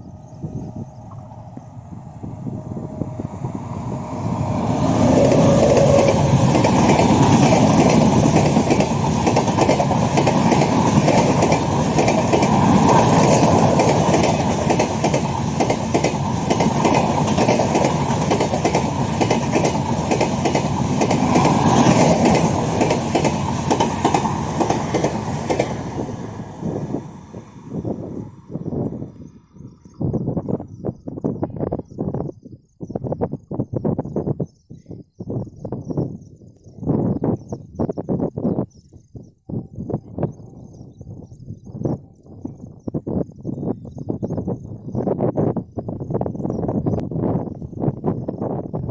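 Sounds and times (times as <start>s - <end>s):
train wheels clattering over rails: 4.0s - 26.0s.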